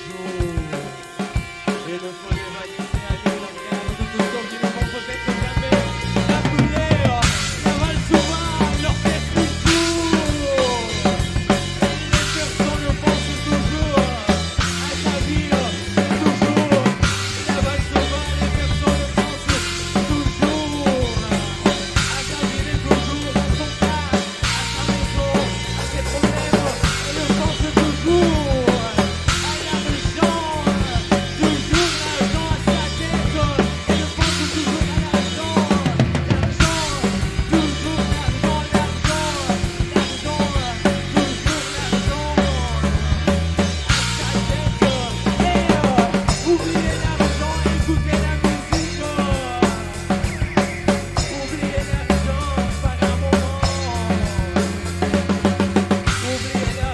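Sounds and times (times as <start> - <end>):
bass line: 0.0 - 56.9
drum kit beat: 0.0 - 56.9
lead guitar bent notes: 0.0 - 56.9.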